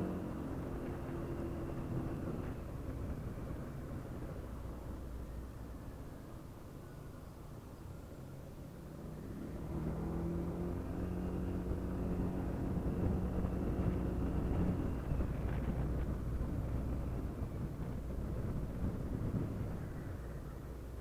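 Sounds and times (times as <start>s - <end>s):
scooter engine rumbling: 10.1s - 20.8s.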